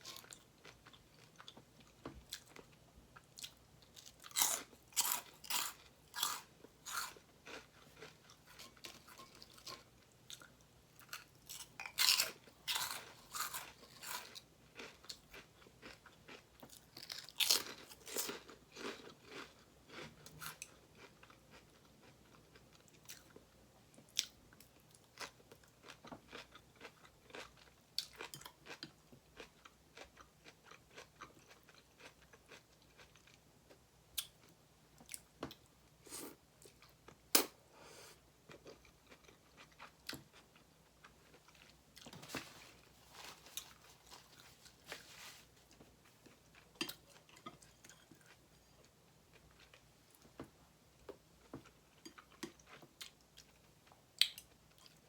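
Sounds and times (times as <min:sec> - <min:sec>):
crunchy chewing: 0:03.4 - 0:23.4.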